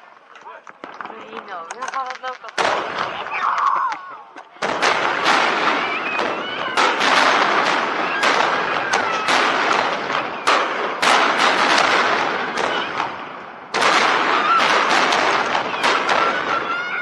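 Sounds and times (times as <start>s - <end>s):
fireworks crackling: 0.0s - 17.0s
fireworks shells bursting: 4.6s - 17.0s.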